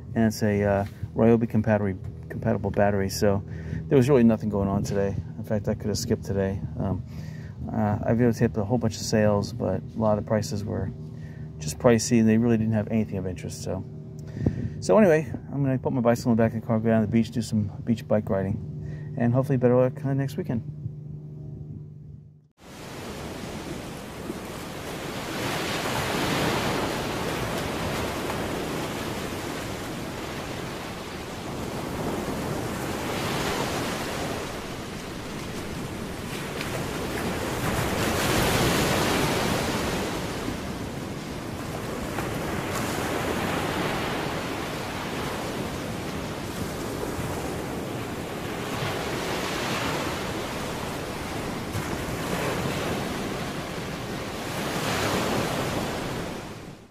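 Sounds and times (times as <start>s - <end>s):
wind on microphone: 14.2s - 15.4s
waves breaking on beach: 22.6s - 56.9s.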